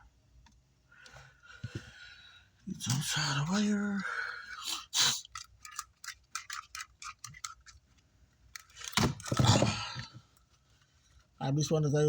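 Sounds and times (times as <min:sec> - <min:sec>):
small objects clicking: 0:05.1 - 0:07.8.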